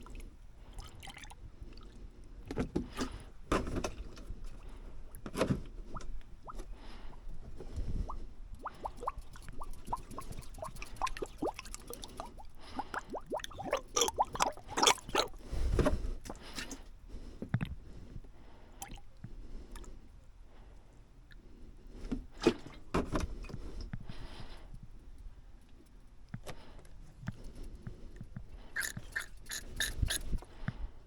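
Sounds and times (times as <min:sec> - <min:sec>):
liquid squishing and gurgling: 0:00.0 - 0:04.2, 0:05.8 - 0:06.8, 0:07.8 - 0:16.8, 0:28.6 - 0:30.5.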